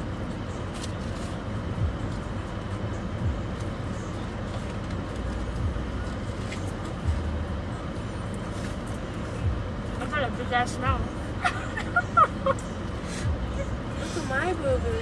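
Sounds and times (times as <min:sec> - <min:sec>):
low engine rumble: 0:00.0 - 0:15.0
soft low thumps: 0:01.8 - 0:02.1, 0:03.2 - 0:03.6.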